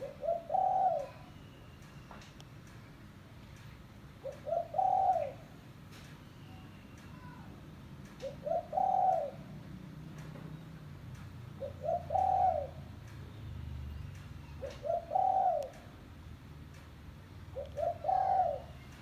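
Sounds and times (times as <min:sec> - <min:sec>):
dove cooing: 0:00.0 - 0:01.4, 0:04.1 - 0:05.6, 0:08.2 - 0:09.7, 0:11.5 - 0:13.0, 0:14.4 - 0:16.0, 0:17.4 - 0:19.0.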